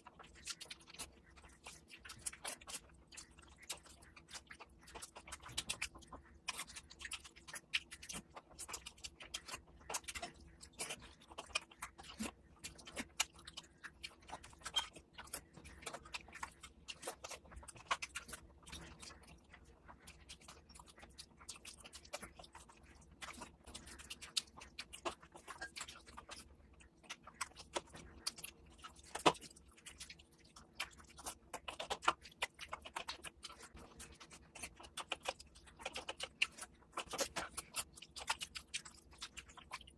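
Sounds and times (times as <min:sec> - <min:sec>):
person chewing and smacking: 0:00.0 - 0:39.9.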